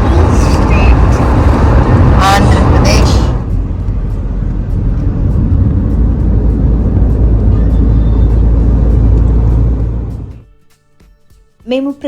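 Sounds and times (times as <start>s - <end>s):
car engine and road rumble: 0.0s - 10.4s
music with steady beat: 10.4s - 12.0s.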